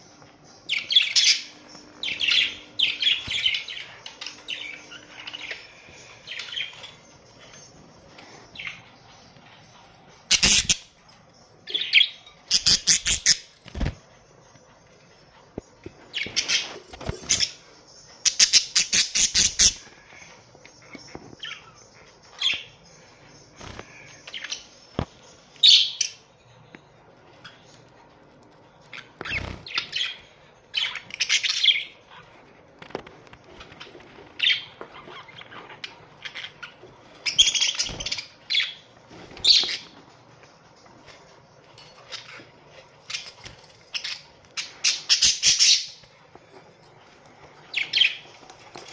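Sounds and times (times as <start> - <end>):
budgerigars chirping: 10.3 - 11.0, 11.7 - 13.6, 18.2 - 19.9, 29.0 - 32.3, 43.9 - 46.1.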